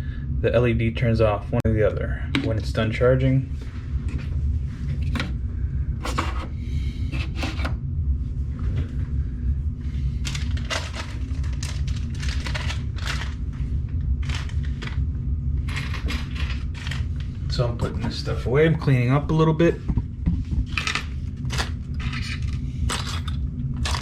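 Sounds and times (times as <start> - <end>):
steady low hum: 0.0 - 24.0
small parts clattering: 10.2 - 13.4, 14.2 - 15.0, 15.7 - 17.2, 20.7 - 24.0
packaging crinkling: 10.3 - 13.4.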